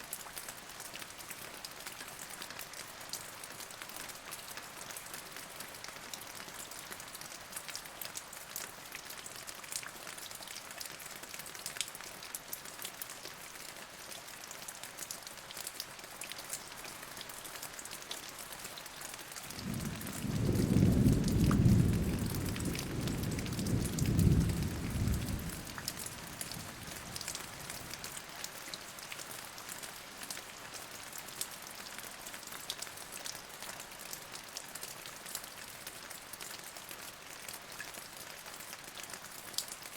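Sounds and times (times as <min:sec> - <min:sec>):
steady rain falling: 0:00.0 - 0:39.9
low rumble of thunder: 0:19.6 - 0:27.8.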